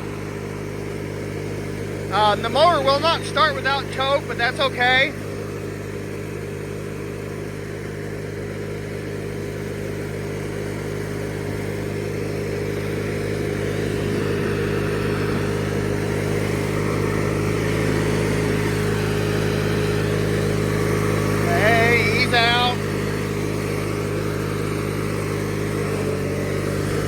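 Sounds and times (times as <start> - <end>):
riding lawnmower engine running: 0.0 - 27.0.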